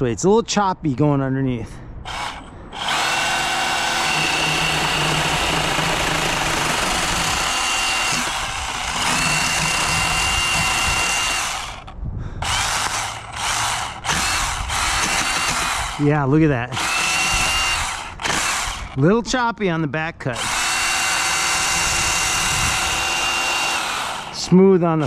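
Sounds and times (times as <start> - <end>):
battery pruning saw cutting limb: 2.1 - 16.1, 16.7 - 19.0, 20.4 - 25.0.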